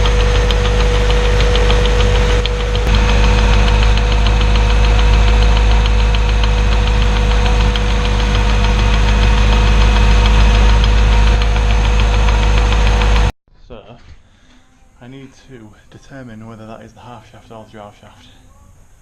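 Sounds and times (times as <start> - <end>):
engine humming: 0.0 - 13.3
fast even ticking: 0.0 - 13.3.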